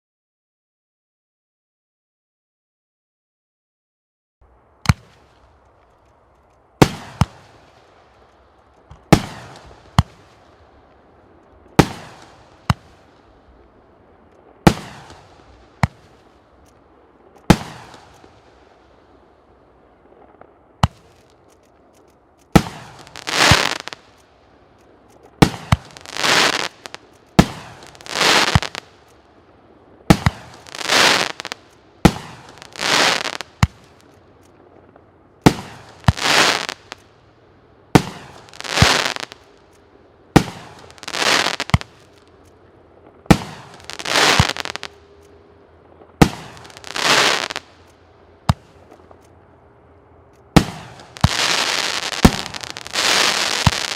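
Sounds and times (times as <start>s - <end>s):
firework crackling bursts: 4.9s - 34.8s, 35.4s - 37.2s, 37.9s - 39.7s, 40.3s - 45.2s, 45.9s - 49.2s, 50.5s - 53.9s.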